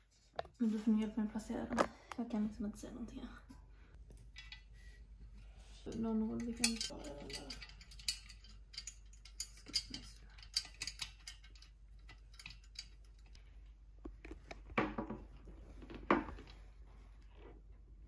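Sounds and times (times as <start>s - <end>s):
light clicks of objects handled: 3.4s - 14.6s.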